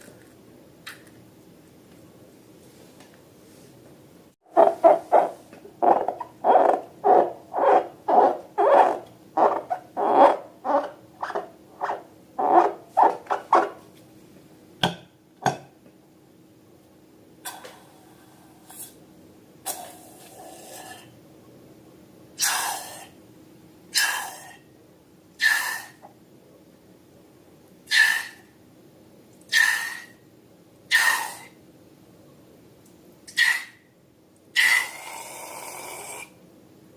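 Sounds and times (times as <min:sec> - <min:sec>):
rubber balloon squeaking: 0:04.5 - 0:13.8.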